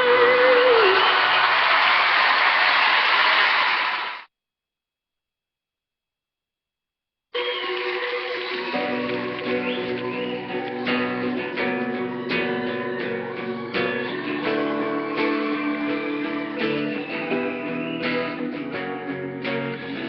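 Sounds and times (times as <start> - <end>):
acoustic guitar strummed and picked: 8.6 - 20.0.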